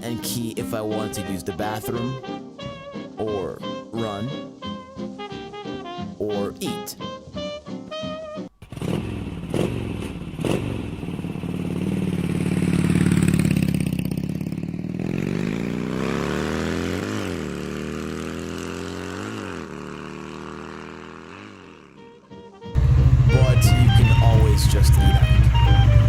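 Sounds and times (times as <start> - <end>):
vehicle engine accelerating: 8.6 - 22.1, 22.8 - 26.0.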